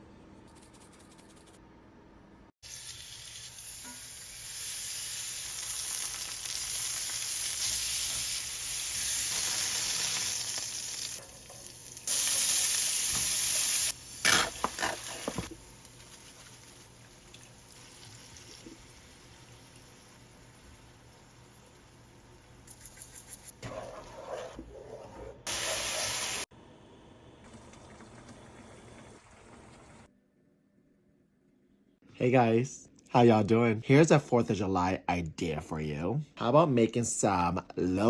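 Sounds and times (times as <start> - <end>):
food sizzling as it fries: 2.6 - 23.6, 25.5 - 26.5.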